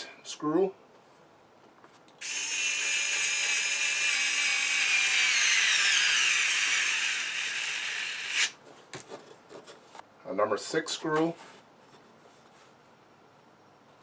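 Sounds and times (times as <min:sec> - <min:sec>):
cordless screwdriver motor whirring: 0:02.2 - 0:08.5.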